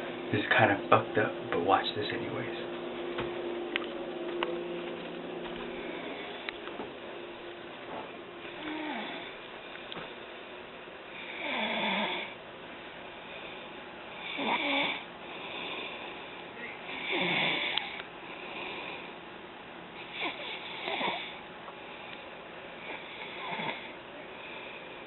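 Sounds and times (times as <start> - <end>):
person snoring: 5.7 - 6.5, 8.5 - 9.4, 14.2 - 16.1, 16.9 - 19.1.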